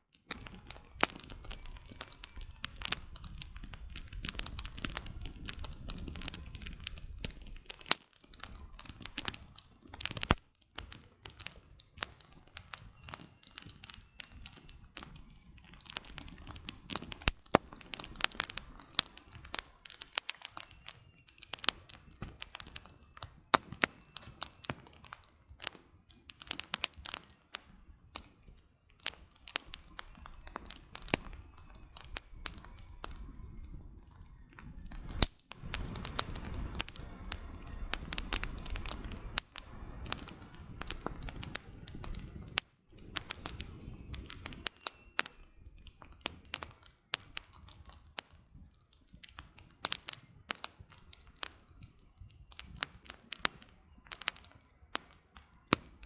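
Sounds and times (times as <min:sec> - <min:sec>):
campfire crackling and popping: 0:00.0 - 0:56.0.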